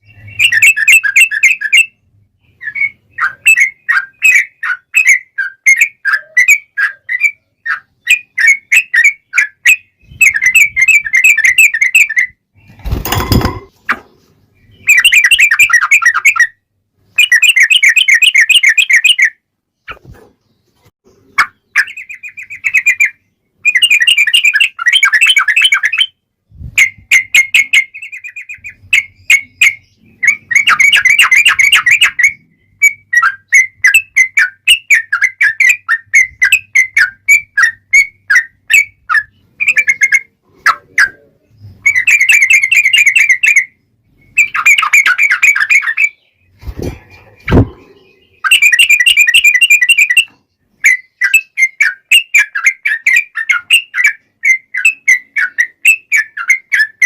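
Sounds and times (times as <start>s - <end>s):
bulbul singing: 26.8s - 46.6s, 47.3s - 57.0s.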